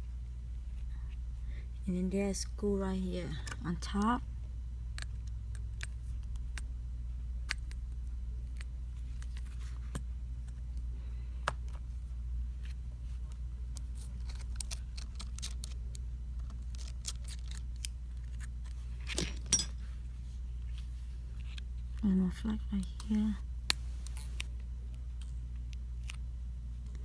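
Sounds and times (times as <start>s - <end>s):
steady low hum: 0.0s - 27.0s
metal tools clicking on small parts: 19.0s - 19.8s.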